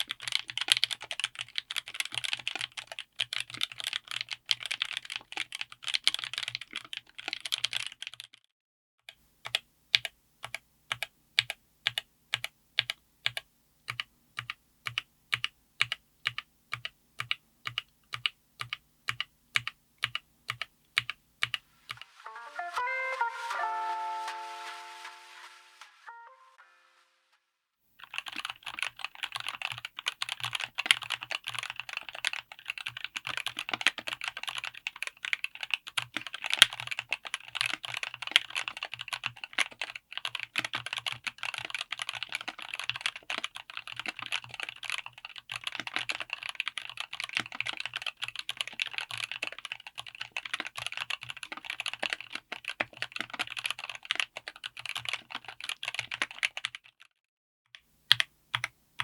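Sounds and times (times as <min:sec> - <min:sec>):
typing on mechanical keyboard: 0:00.0 - 0:08.5, 0:09.4 - 0:22.1, 0:28.0 - 0:57.1, 0:57.8 - 0:58.7.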